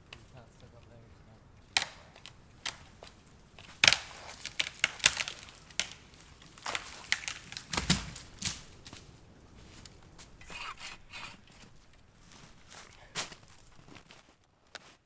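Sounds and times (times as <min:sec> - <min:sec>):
sharp cracks and crunches: 0:01.6 - 0:09.2.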